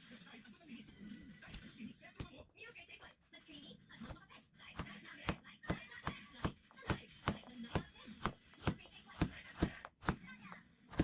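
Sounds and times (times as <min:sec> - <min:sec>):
knife chopping on cutting board: 0:04.8 - 0:11.0.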